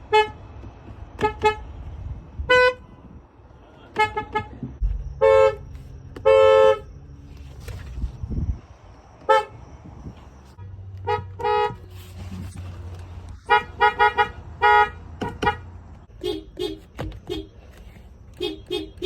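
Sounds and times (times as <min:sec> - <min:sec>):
car horn toots: 0:00.0 - 0:00.4, 0:01.1 - 0:01.7, 0:02.4 - 0:03.1, 0:03.8 - 0:06.9, 0:09.2 - 0:09.6, 0:10.6 - 0:11.9, 0:13.4 - 0:19.0
steady low hum: 0:04.7 - 0:10.6.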